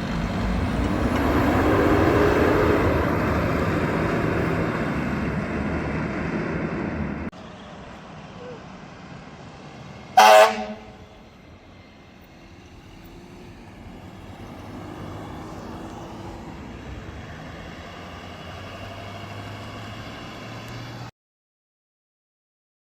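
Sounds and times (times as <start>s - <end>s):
truck engine running: 0.0s - 16.1s
fire truck air horn blast: 10.2s - 11.1s.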